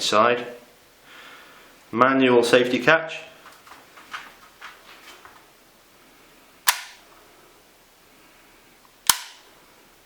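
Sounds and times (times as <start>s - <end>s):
pellet pistol shot: 6.7s - 7.0s, 9.1s - 9.4s.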